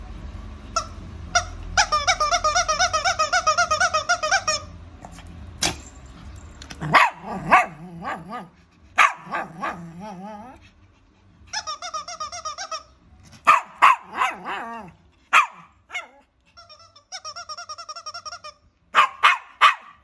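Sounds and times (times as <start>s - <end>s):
dog whining high-pitched: 0.7s - 5.8s, 11.5s - 19.3s
dog sneezing: 5.0s - 6.0s.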